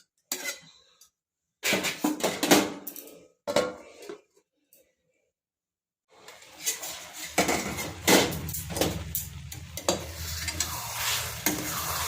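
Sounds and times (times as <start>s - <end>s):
spoon stirring and scraping pan: 0.0s - 1.1s, 6.2s - 12.0s
sizzling hiss: 6.2s - 12.0s.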